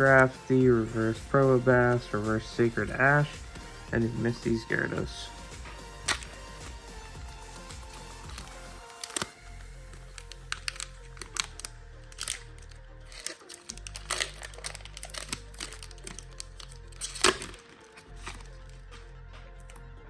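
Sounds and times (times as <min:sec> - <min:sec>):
background music: 0:00.0 - 0:20.0
foil wrapper crinkling and tearing: 0:07.6 - 0:19.1.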